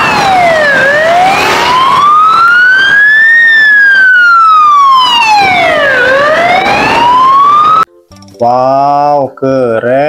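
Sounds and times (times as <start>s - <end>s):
ambulance siren wailing: 0.0s - 7.9s.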